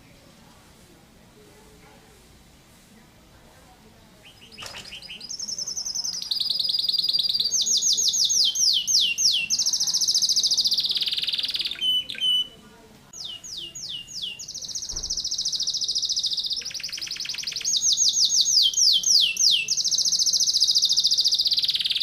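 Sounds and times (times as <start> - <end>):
canary singing trills: 4.2 - 12.6, 13.2 - 22.0.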